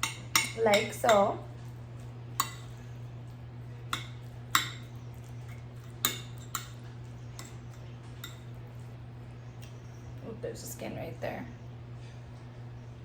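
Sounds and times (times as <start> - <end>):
utensil clinking against bowl: 0.0 - 1.4, 2.3 - 2.9, 3.8 - 8.6.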